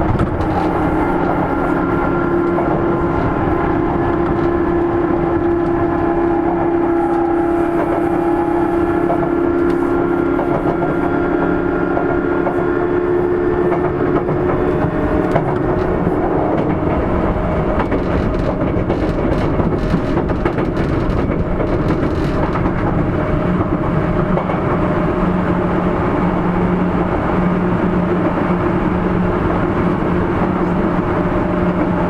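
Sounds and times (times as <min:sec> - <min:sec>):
inverter and traction motor hum: 0:00.0 - 0:20.4
faint rail clicks: 0:00.0 - 0:24.8
train wheels rumbling on rail: 0:00.0 - 0:32.0.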